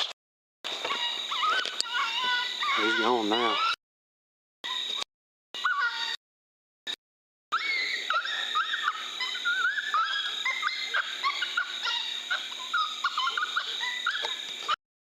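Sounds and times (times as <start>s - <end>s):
coyotes yipping and howling: 0.7s - 3.8s, 4.6s - 5.0s, 5.6s - 6.2s, 7.5s - 14.8s.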